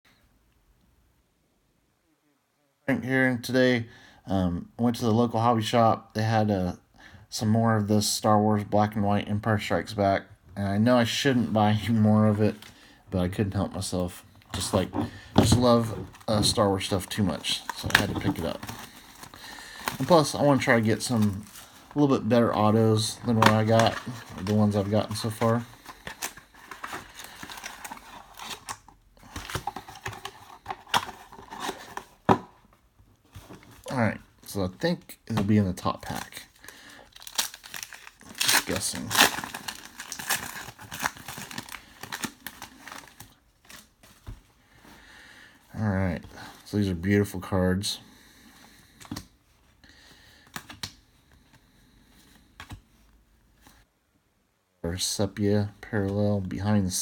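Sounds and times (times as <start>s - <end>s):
cards being flipped through: 14.5s - 22.0s, 22.6s - 32.4s
wrappers rustling: 14.5s - 32.2s, 35.8s - 44.4s.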